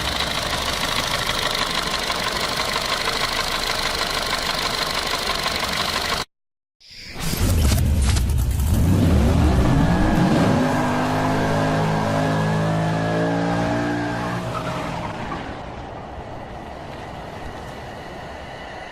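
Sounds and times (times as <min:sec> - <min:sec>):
car engine revving: 0:08.6 - 0:15.3.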